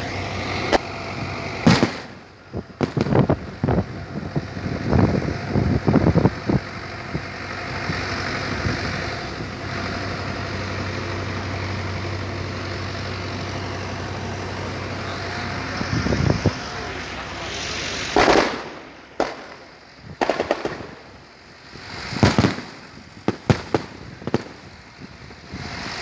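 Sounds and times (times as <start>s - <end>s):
low rumble with hum: 0.0s - 26.0s
firecracker bangs: 1.6s - 3.8s, 17.4s - 21.2s, 21.9s - 24.7s.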